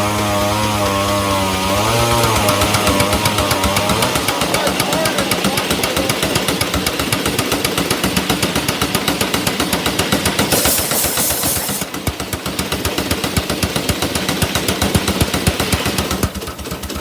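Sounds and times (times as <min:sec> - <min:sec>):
old engine exhaust popping: 0:00.0 - 0:17.0
burst of hiss: 0:10.4 - 0:12.0.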